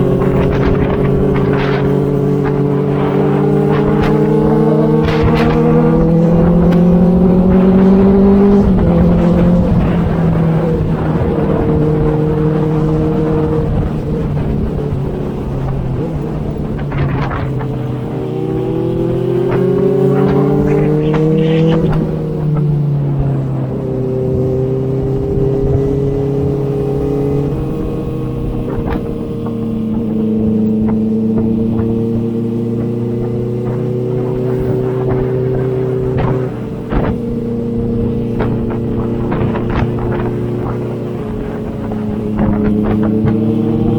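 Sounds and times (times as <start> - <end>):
motorcycle engine running: 0.0 - 43.9
wind rumble: 0.0 - 43.9.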